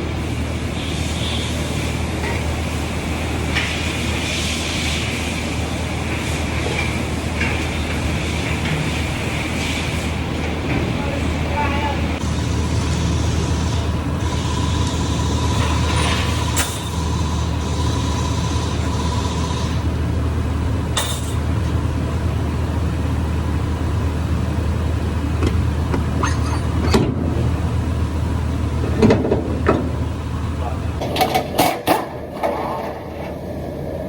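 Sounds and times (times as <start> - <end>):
hiss: 0.2 - 10.3, 12.2 - 19.8
sharp clicks and knocks: 25.4 - 27.4.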